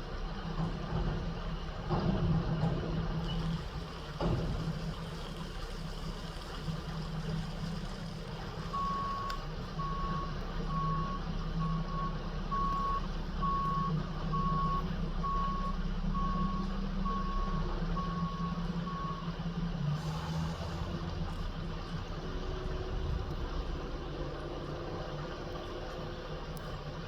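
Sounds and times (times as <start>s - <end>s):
diesel engine running: 0.0s - 27.0s
truck backup alarm beeping: 8.6s - 21.1s.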